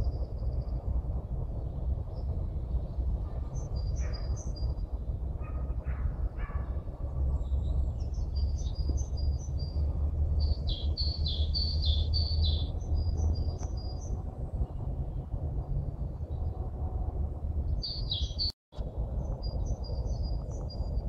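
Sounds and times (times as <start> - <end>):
low rumble: 0.0 - 21.0
harsh low bird calls: 1.6 - 4.8, 5.4 - 15.3, 17.8 - 18.5
birds chirping and singing: 7.4 - 14.2, 17.8 - 18.5.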